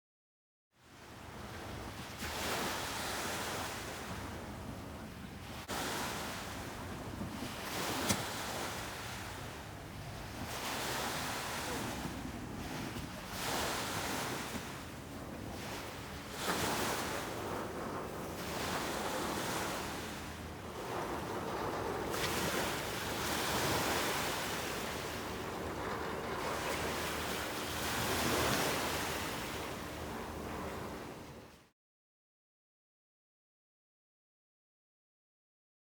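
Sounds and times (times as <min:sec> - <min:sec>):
wind striking microphone: 0:03.4 - 0:31.6.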